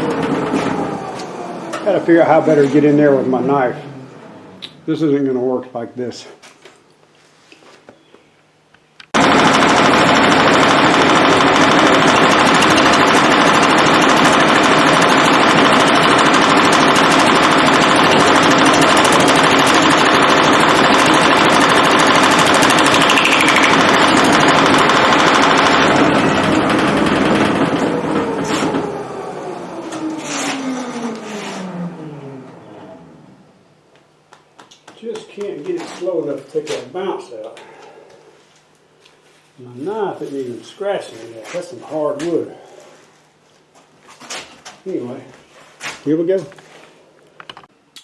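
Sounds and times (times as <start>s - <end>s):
wood lathe rattling clatter: 9.2s - 28.9s.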